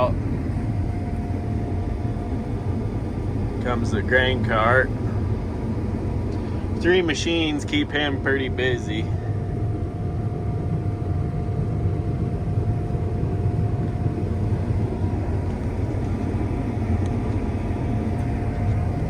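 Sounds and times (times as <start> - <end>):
combine harvester rumble: 0.0 - 19.0
faint steady machine whine: 0.0 - 19.0.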